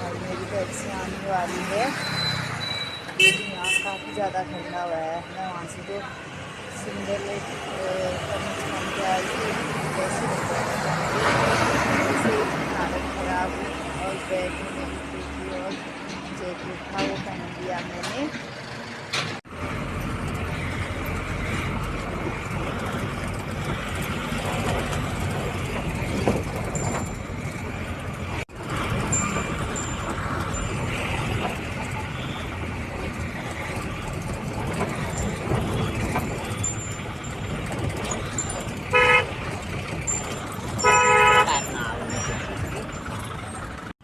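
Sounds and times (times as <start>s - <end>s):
road traffic: 0.0s - 44.0s
vehicle horn honking: 3.1s - 4.2s, 38.9s - 39.3s, 40.8s - 41.8s
indistinct voices: 3.4s - 18.4s.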